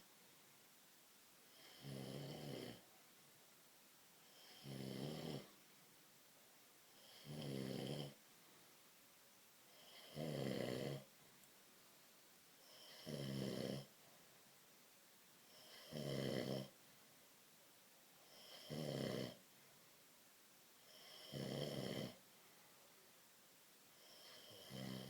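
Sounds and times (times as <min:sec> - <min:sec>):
man snoring: 0:01.5 - 0:02.8, 0:04.4 - 0:05.5, 0:07.0 - 0:08.2, 0:09.8 - 0:11.1, 0:12.7 - 0:13.9, 0:15.6 - 0:16.7, 0:18.3 - 0:19.4, 0:20.9 - 0:22.2, 0:24.1 - 0:25.0.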